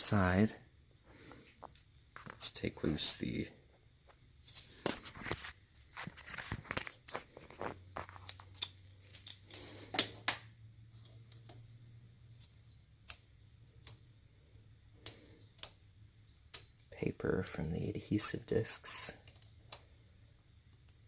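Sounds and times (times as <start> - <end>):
small crinkles rips and clicks: 4.4 - 10.2.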